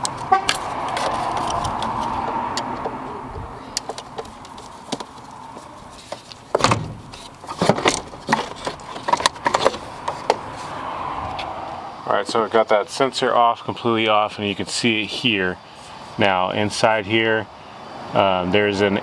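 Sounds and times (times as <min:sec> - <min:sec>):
clunks: 0:00.0 - 0:10.7
plastic clicks and rattles: 0:06.0 - 0:10.5.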